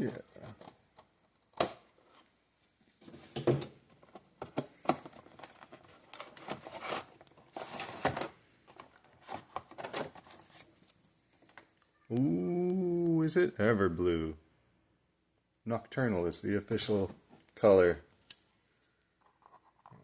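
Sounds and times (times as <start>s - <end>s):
packaging rustling and tearing: 5.0s - 10.8s.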